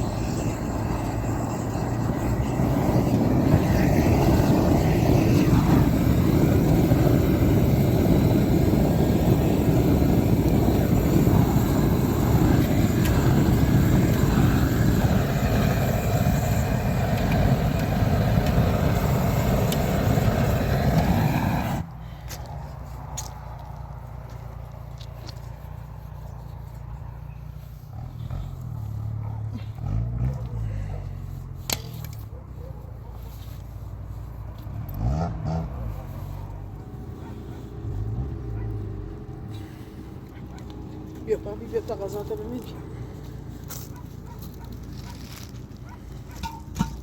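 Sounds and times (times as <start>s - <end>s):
loud rushing roar: 0.0s - 22.0s.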